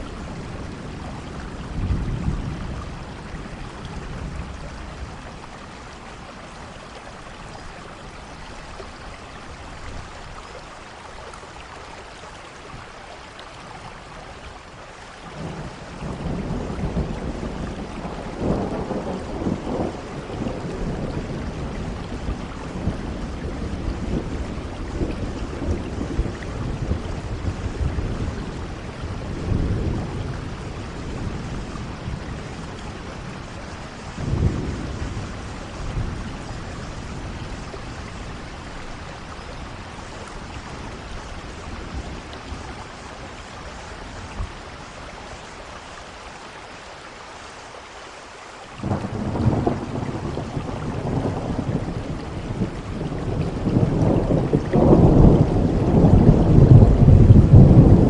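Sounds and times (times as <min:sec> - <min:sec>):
rolling thunder: 0:00.0 - 0:05.9, 0:15.4 - 0:44.7, 0:48.8 - 0:58.0
steady rainfall: 0:00.0 - 0:58.0.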